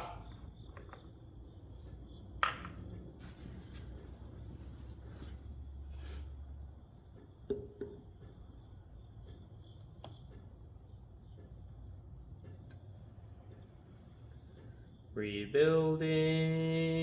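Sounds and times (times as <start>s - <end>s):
faint high-pitched hum: 0.0s - 17.0s.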